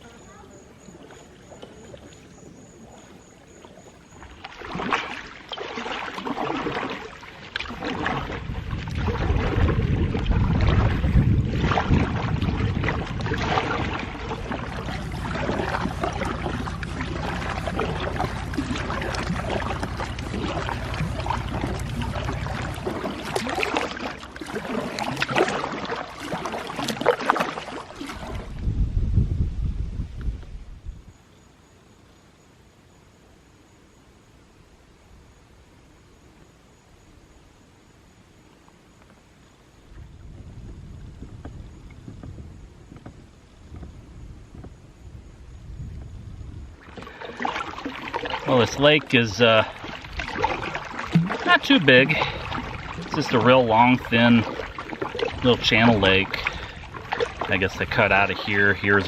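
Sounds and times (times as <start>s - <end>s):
paddle splashing in water: 0.0s - 28.7s, 38.4s - 59.0s
low rumble: 8.4s - 23.3s.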